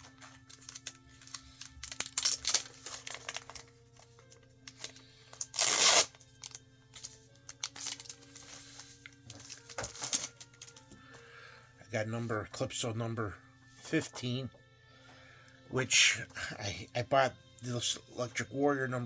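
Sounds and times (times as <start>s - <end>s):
plastic tearing rustle: 0.0s - 10.7s
plastic sleeves crinkling: 0.0s - 10.9s
faint background music: 0.0s - 19.0s.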